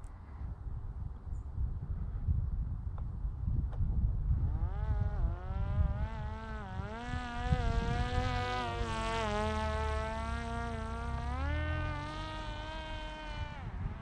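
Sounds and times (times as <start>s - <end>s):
wind rumble on microphone: 0.0s - 14.0s
drone propeller buzzing whine: 4.4s - 14.0s.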